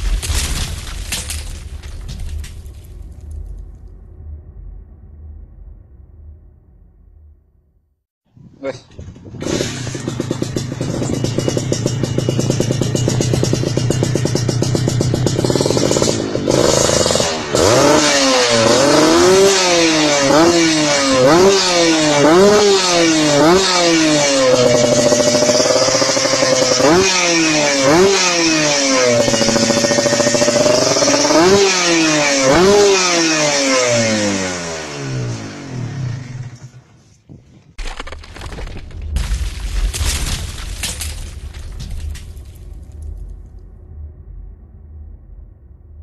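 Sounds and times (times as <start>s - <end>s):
motorcycle engine revving: 9.0s - 37.0s.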